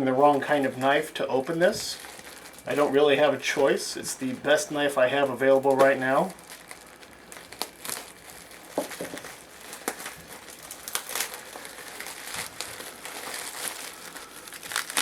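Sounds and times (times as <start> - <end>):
packaging crinkling and crackling: 0.0 - 15.0
knife cutting taped wrapping: 8.8 - 15.0.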